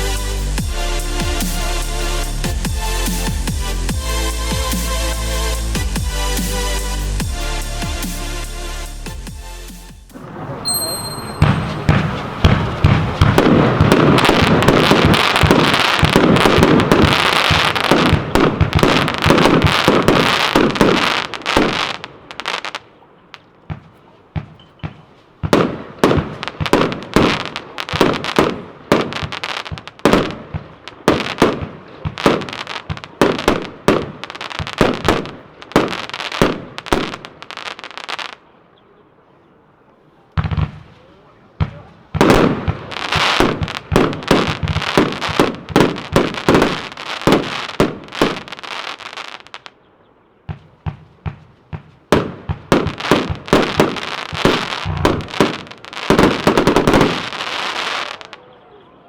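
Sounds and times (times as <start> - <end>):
firework cake shots and crackling: 10.1 - 38.4, 40.4 - 49.8, 50.5 - 58.4.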